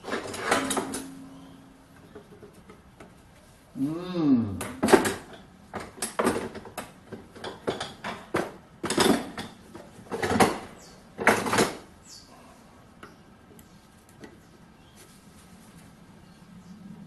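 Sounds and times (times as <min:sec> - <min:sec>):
metal tools clinking and scraping: 0:00.0 - 0:02.2.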